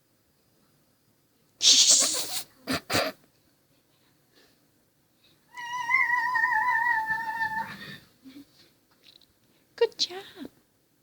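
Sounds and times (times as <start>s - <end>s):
short bursts of noise: 1.6s - 2.5s
child imitating a meow: 5.5s - 7.8s.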